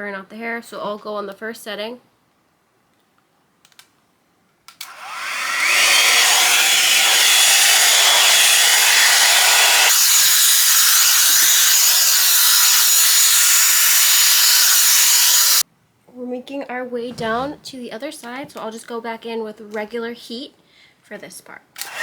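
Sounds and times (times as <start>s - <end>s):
hair dryer blowing: 4.8s - 15.6s.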